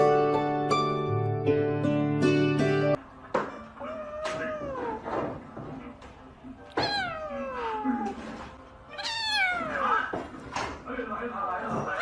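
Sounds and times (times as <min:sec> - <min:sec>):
cat meowing: 0:03.8 - 0:05.0, 0:06.7 - 0:10.2.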